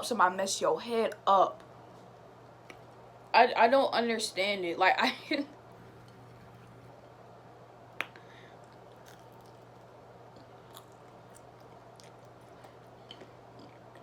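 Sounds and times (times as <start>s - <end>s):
person chewing food: 8.6s - 14.0s.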